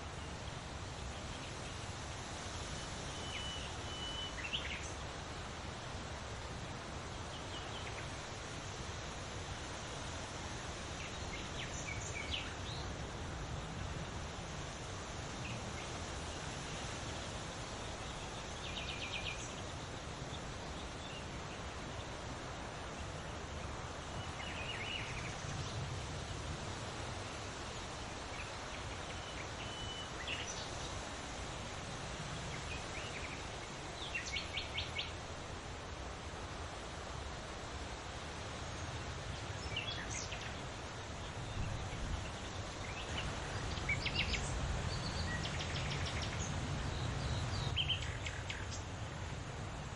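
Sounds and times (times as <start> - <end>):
wind rustling leaves: 0.0 - 49.9
small birds chirping: 38.5 - 49.0.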